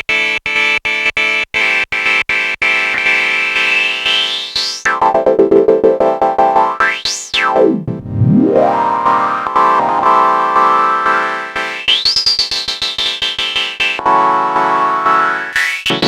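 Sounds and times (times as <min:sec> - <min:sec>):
synthesizer note with filter sweep: 0:06.0 - 0:10.4.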